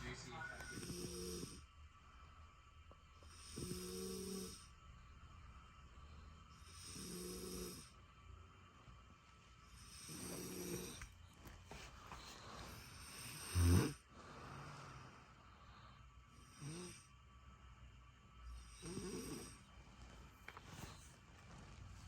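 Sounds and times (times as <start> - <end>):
person snoring: 0.0 - 1.7, 3.2 - 4.7, 6.5 - 8.0, 9.7 - 11.0, 12.4 - 15.3, 16.4 - 17.1, 18.5 - 19.7.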